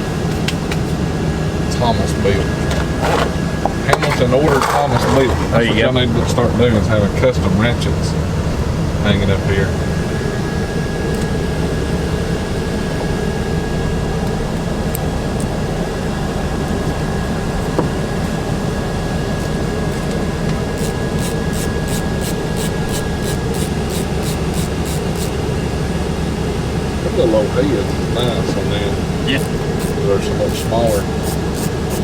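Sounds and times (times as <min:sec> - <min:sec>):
steady machine hum: 0:00.0 - 0:32.0
ratchet clicking: 0:20.8 - 0:25.4, 0:29.4 - 0:32.0.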